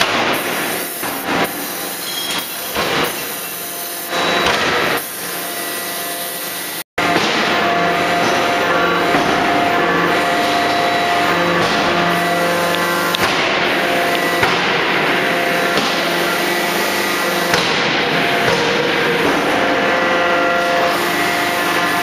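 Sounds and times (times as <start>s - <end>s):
machinery drone: 2.7s - 22.0s
forging hammer blows: 7.0s - 22.0s.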